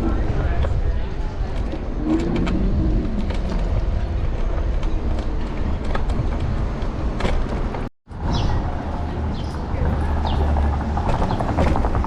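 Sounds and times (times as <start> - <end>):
electric scooter road noise: 0.0 - 12.0.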